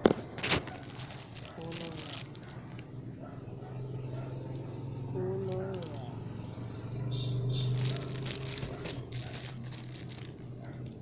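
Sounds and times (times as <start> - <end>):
packaging rustling: 0.4 - 2.9, 5.4 - 6.0, 7.6 - 11.0.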